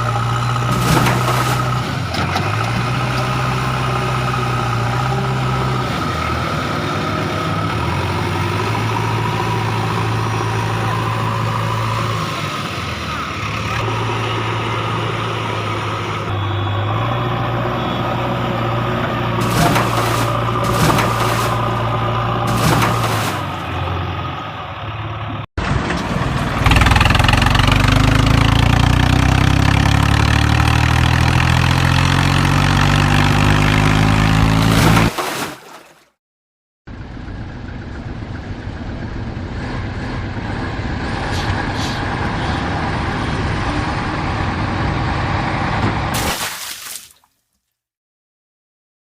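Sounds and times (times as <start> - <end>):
loud engine speeding up: 0.0 - 35.2, 36.9 - 46.1
quiet engine running steadily: 36.9 - 46.0.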